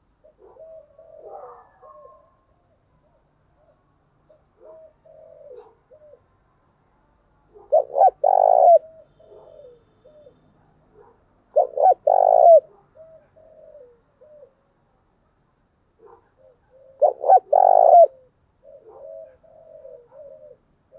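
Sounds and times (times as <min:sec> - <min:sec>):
dove cooing: 0:00.0 - 0:02.4, 0:03.6 - 0:06.3, 0:07.5 - 0:10.4, 0:11.5 - 0:14.6, 0:16.0 - 0:20.9
soft low coos: 0:11.6 - 0:14.6, 0:16.5 - 0:20.6.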